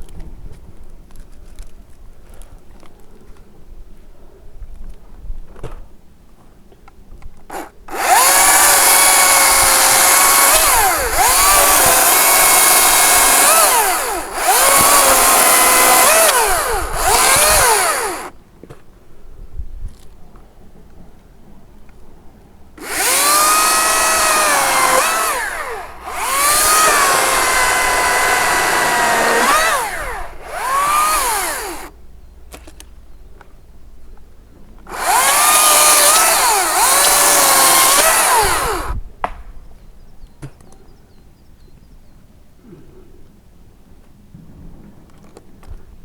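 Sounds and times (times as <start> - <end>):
electric chainsaw cutting branches: 7.5 - 18.4, 22.8 - 31.9, 34.9 - 39.0.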